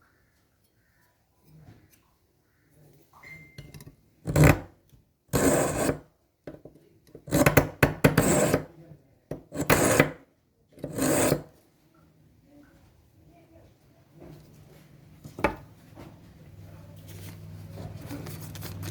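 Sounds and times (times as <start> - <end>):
knife scraping on sharpener: 4.3 - 4.6, 5.3 - 6.0, 7.3 - 8.7, 9.4 - 10.2, 10.8 - 11.5.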